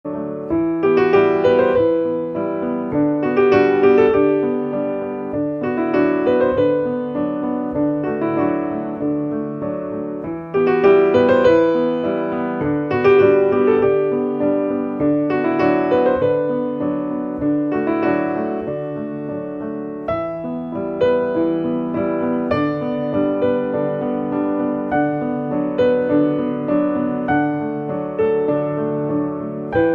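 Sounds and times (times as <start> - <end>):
gentle solo piano melody: 0.0 - 29.9.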